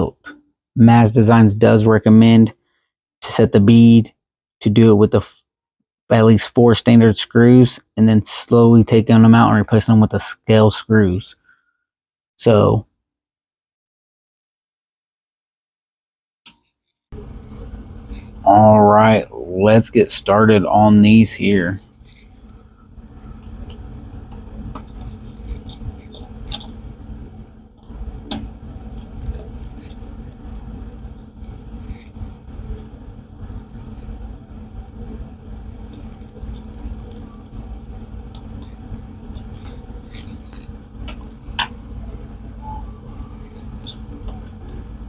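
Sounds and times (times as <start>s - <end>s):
steady low hum: 17.1s - 45.0s.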